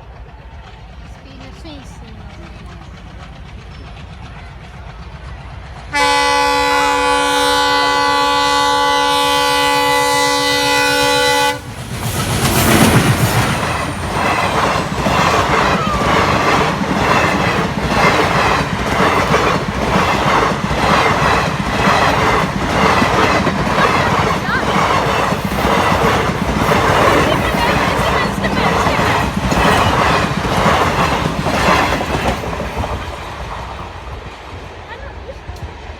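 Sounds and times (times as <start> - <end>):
wheels clacking over rail joints: 0.0 - 35.8
train passing: 0.0 - 35.9
locomotive horn blast: 5.9 - 11.7.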